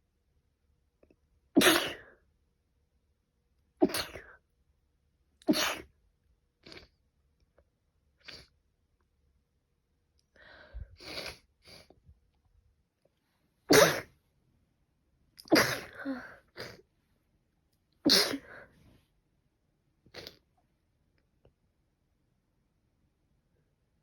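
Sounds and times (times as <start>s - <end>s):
person sneezing: 1.6s - 2.2s, 3.8s - 4.4s, 5.5s - 5.9s, 13.7s - 14.1s, 15.4s - 16.8s, 18.1s - 18.7s.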